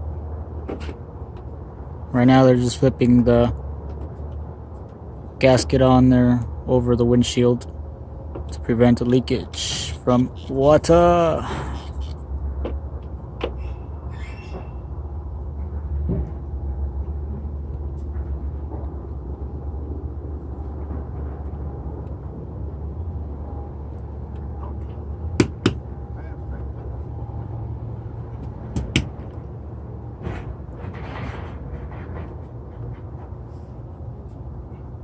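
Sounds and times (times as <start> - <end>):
steady low rumble: 14.8 - 35.0
sharp knocks: 25.3 - 25.9, 28.4 - 29.3.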